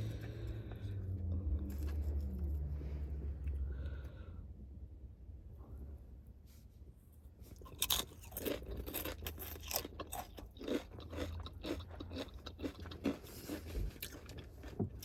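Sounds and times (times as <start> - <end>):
crunching chips while chewing: 7.5 - 15.0.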